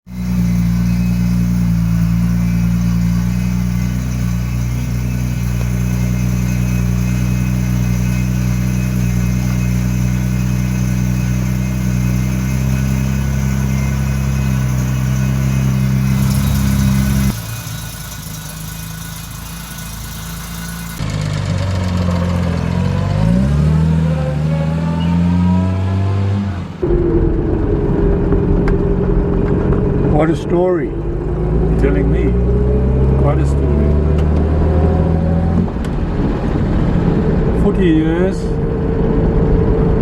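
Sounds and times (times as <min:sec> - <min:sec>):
car engine running: 0:00.0 - 0:23.5, 0:26.7 - 0:40.0.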